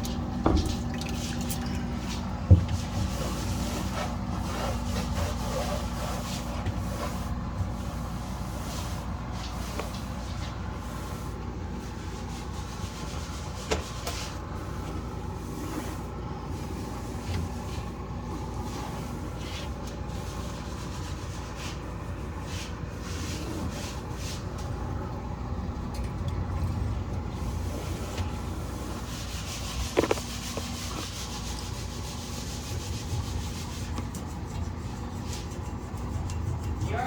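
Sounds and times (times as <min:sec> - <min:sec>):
cloth scrubbing surfaces: 0:00.0 - 0:24.6, 0:27.3 - 0:36.2
low steady hum: 0:00.0 - 0:37.0.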